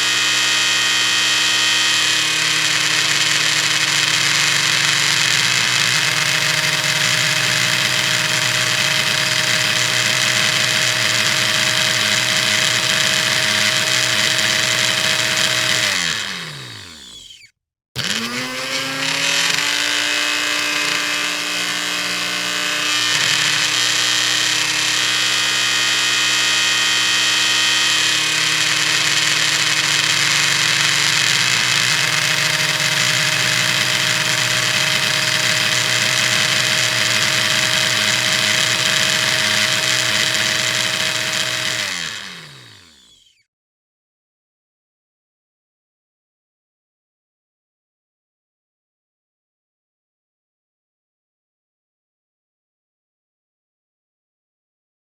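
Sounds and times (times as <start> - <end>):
blender motor running: 0.0 - 43.4.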